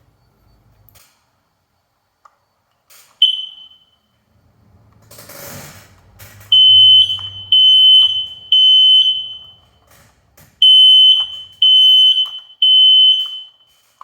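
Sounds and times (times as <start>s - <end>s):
smoke alarm beeping: 3.2s - 4.2s, 6.5s - 9.8s, 10.6s - 13.8s.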